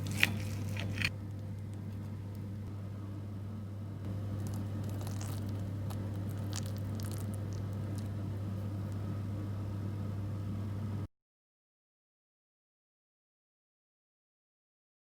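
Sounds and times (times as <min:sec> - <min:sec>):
breadcrumb coating crunching: 0:00.0 - 0:02.1, 0:04.1 - 0:08.2
steady low hum: 0:00.0 - 0:11.1.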